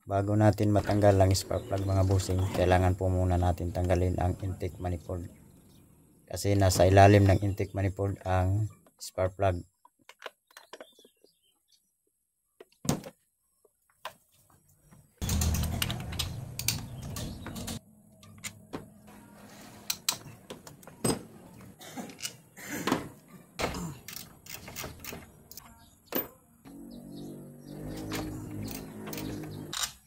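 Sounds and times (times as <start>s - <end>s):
hand tools clicking on metal: 24.0s - 25.7s, 28.2s - 30.0s.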